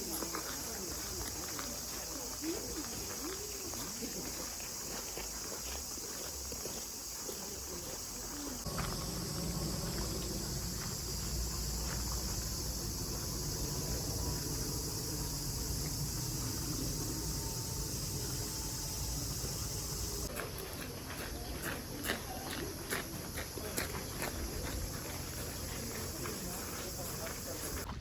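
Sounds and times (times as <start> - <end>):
cicadas shrilling: 0.0 - 27.9
low rumble: 8.7 - 20.3.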